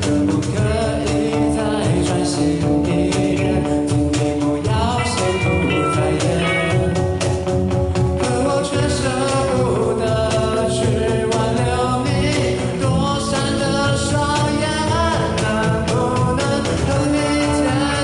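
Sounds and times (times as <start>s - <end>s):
live band playing pop-rock: 0.0s - 18.0s.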